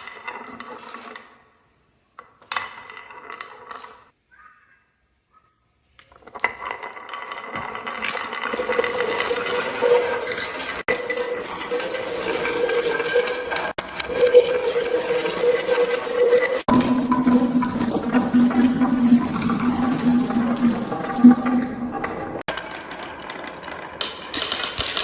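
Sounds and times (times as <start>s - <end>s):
marbles rattling down a track: 2.4s - 4.1s, 6.1s - 21.2s, 22.4s - 25.0s.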